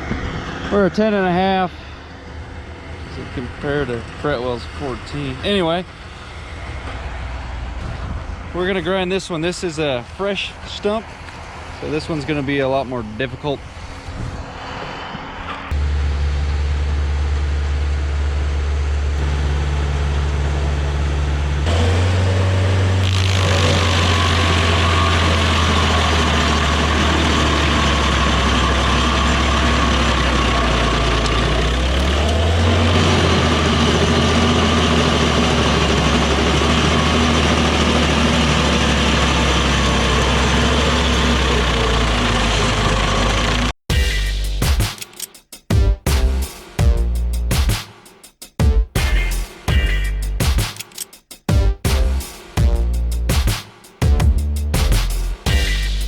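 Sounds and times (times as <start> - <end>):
stump grinder engine: 16.8 - 43.7
cutter wheel grinding wood: 21.6 - 43.7.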